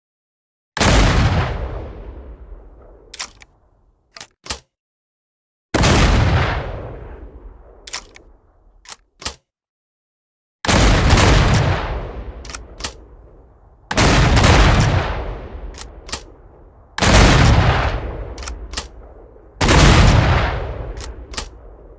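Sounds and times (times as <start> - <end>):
shotgun clicks: 3.1 - 3.5, 4.1 - 4.8, 7.9 - 9.5, 12.4 - 13.1, 15.7 - 16.3, 18.3 - 19.0, 20.8 - 21.6.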